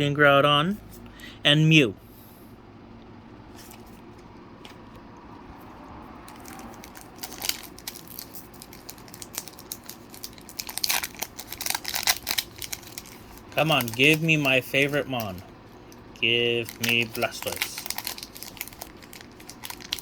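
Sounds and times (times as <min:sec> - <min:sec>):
crackling foil: 0:06.3 - 0:20.0
foil pack crinkling and rustling: 0:06.3 - 0:20.0.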